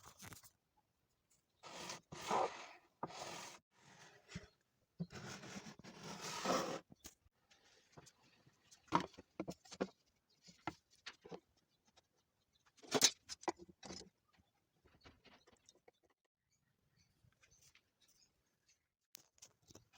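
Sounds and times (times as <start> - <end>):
scraping slide: 5.1 - 6.9.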